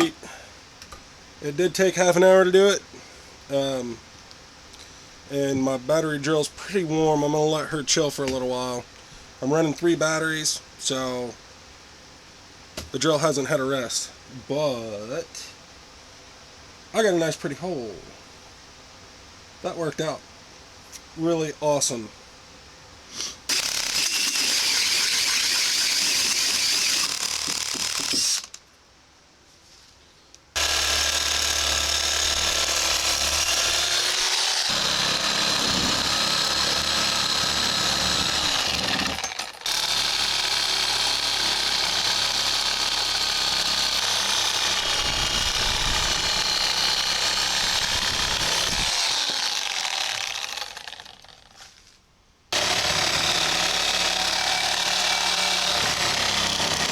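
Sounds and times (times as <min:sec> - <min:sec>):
angle grinder grinding steel: 0:23.5 - 0:28.6, 0:30.6 - 0:51.4, 0:52.6 - 0:56.9.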